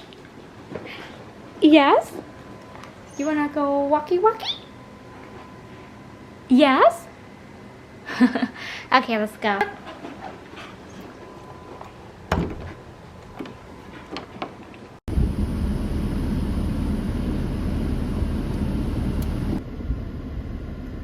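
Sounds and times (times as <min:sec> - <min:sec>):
loud low rumbling: 0:15.1 - 0:21.0.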